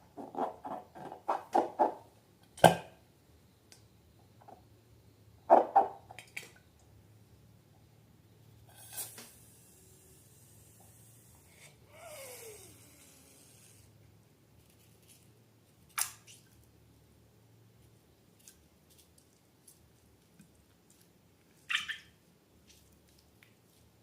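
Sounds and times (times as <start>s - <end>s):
crackly slime squelch: 17.8s - 21.7s.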